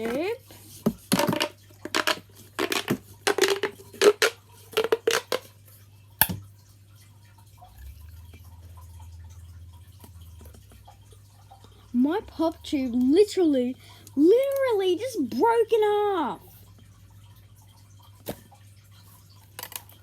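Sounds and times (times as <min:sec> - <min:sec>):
plastic pop tube crackling: 0:00.0 - 0:05.6, 0:06.2 - 0:06.5, 0:19.4 - 0:20.0
plastic tube snapping: 0:01.1 - 0:05.5, 0:06.2 - 0:06.4.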